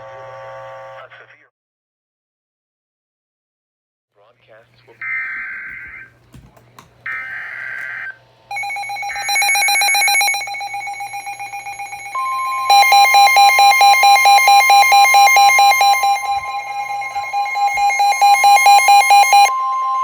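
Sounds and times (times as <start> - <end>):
electronic alarm beeping: 5.0 - 6.1, 7.0 - 20.0
steady warning tone: 5.0 - 6.2, 7.0 - 20.0.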